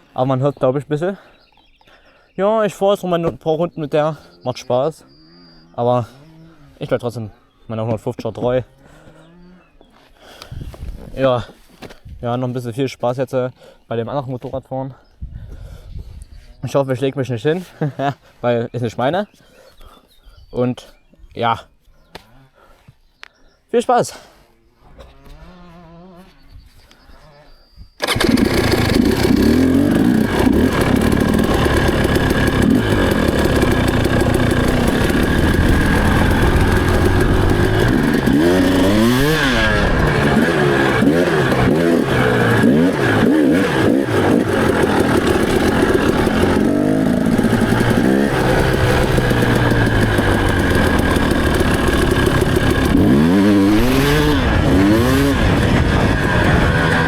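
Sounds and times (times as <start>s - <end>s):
motorcycle engine revving: 28.0s - 57.0s.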